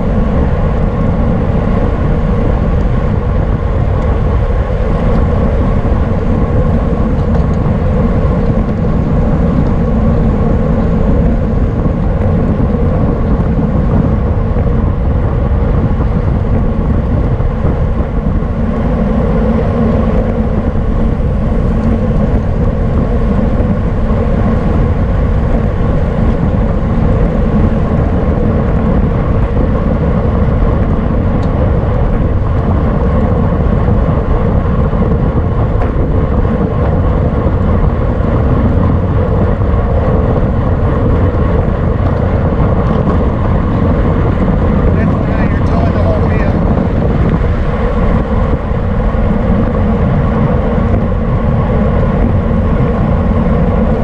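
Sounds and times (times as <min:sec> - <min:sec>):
wind buffeting microphone: 0:00.0 - 0:54.0.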